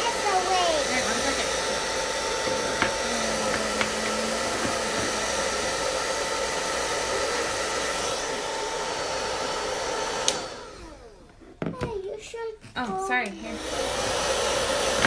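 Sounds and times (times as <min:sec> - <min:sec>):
hair dryer running: 0:00.0 - 0:11.5, 0:13.1 - 0:15.0
hair dryer switch click: 0:02.3 - 0:05.6, 0:10.2 - 0:10.6.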